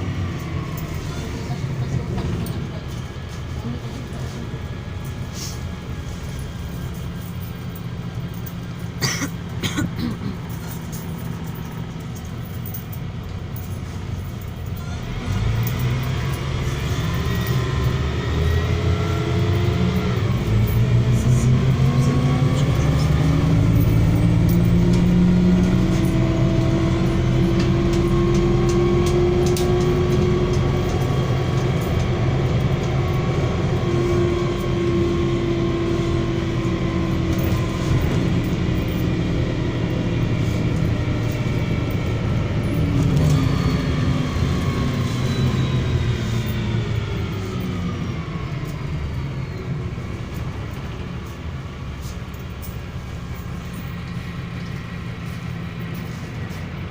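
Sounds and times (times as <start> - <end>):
bus diesel engine: 0.0 - 56.9.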